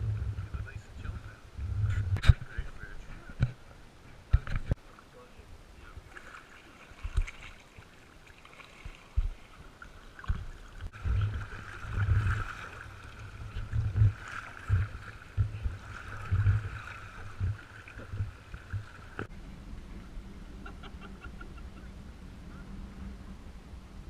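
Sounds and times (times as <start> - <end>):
low thumps: 0.0 - 2.6, 13.3 - 19.5
paddle strokes: 0.0 - 23.3
water splashing and lapping: 0.0 - 23.6.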